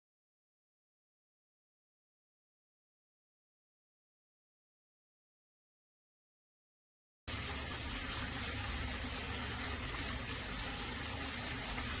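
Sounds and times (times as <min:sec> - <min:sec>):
fountain water splashing: 0:07.3 - 0:12.0.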